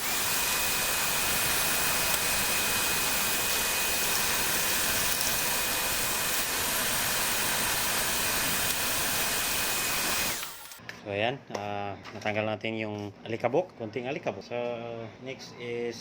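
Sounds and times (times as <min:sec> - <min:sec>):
electric dust blower whining: 0:00.0 - 0:10.8.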